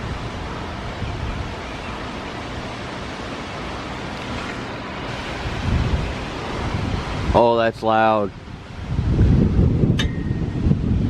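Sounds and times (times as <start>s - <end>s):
low rumble of gust: 0.0s - 1.6s, 5.1s - 7.6s, 8.3s - 11.0s
heavy rain: 0.0s - 11.0s
wind rushing: 5.0s - 7.6s, 8.2s - 11.0s.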